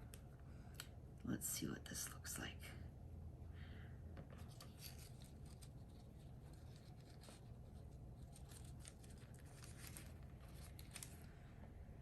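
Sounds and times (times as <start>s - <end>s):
paper rustling and clicking: 4.3s - 11.4s.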